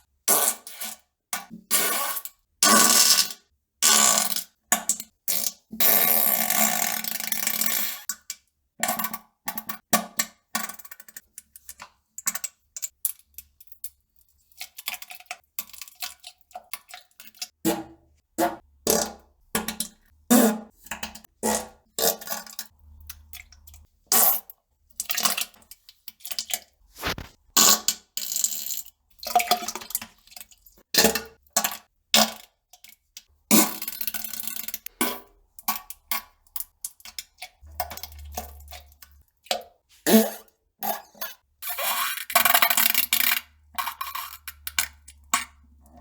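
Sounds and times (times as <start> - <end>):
fart sounds: 27.0 - 27.4.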